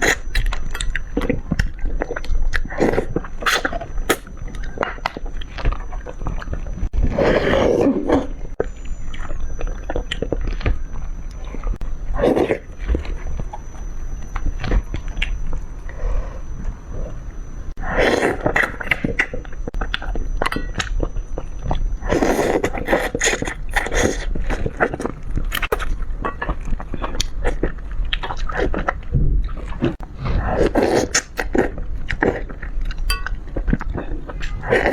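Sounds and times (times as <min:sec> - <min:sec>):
chewing and biting food: 0:00.0 - 0:06.8, 0:18.0 - 0:34.9.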